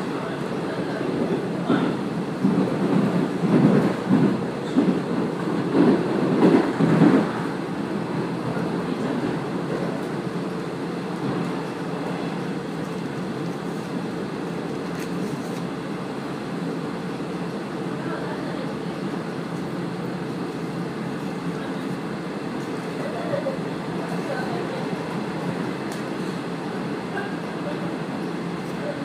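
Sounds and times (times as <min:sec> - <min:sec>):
railcar running rumble: 0:00.0 - 0:29.0.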